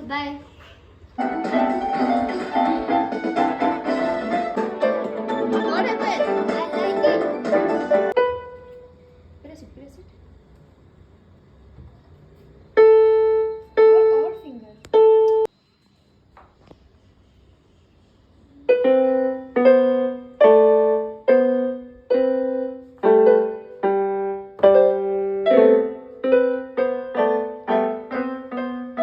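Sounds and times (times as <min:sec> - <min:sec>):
simple piano melody: 0:01.2 - 0:09.0, 0:12.8 - 0:15.5, 0:18.7 - 0:29.0.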